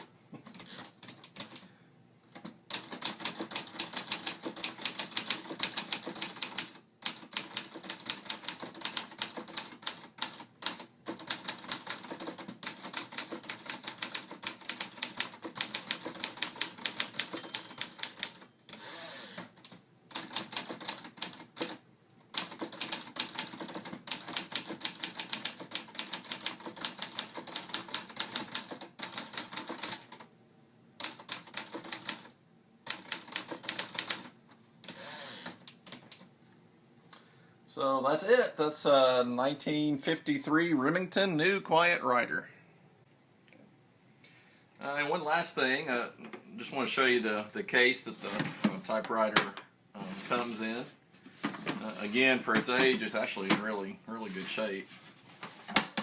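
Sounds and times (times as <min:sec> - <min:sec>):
manual typewriter keystrokes: 0:00.5 - 0:01.7, 0:02.4 - 0:18.8, 0:19.4 - 0:30.3, 0:31.0 - 0:36.2.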